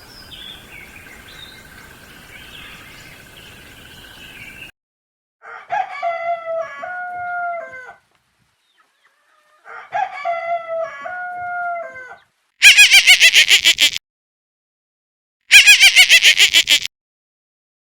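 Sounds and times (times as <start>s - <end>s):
rooster crowing: 5.4s - 8.0s, 9.0s - 13.2s
rapidly pulsing animal call: 12.6s - 14.0s, 15.5s - 16.9s.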